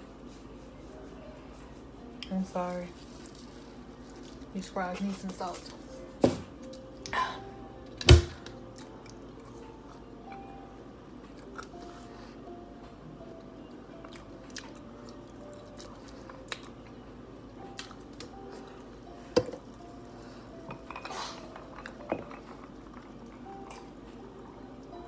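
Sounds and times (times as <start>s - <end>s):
soft background music: 0.0s - 25.0s
person chewing food: 11.3s - 12.5s, 13.4s - 17.0s, 17.6s - 18.8s, 21.2s - 24.6s.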